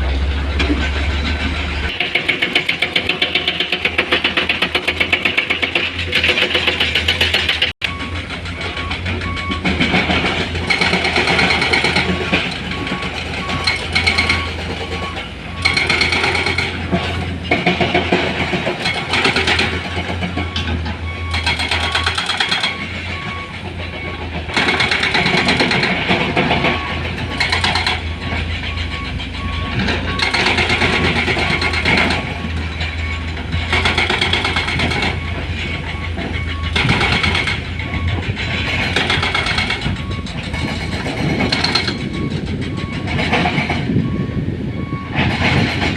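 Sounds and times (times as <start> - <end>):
diesel engines humming: 0.0 - 45.9
electronic reversing beep: 7.8 - 16.7, 20.3 - 25.9, 26.6 - 43.2, 44.0 - 45.6.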